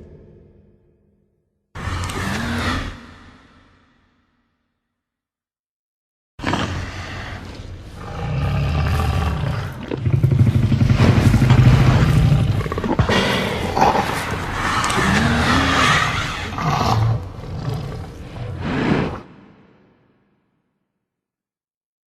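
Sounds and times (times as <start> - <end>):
dinosaur roaring: 1.8 - 3.7, 6.4 - 19.6.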